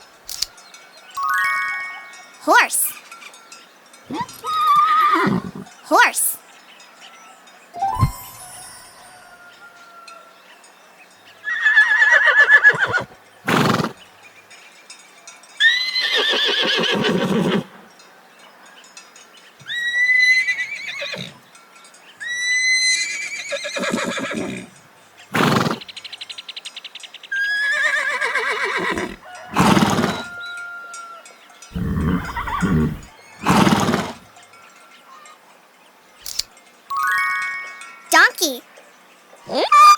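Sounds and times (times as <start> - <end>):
horses neighing: 4.1 - 5.8, 11.5 - 14.0, 15.6 - 17.7, 19.7 - 21.4, 22.5 - 24.7, 25.3 - 25.8, 27.6 - 30.4, 31.7 - 34.2.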